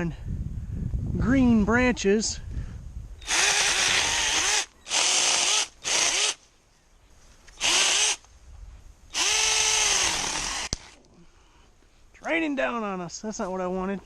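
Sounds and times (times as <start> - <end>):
electric chainsaw cutting branch: 3.2 - 6.4, 7.6 - 8.2, 9.1 - 11.0.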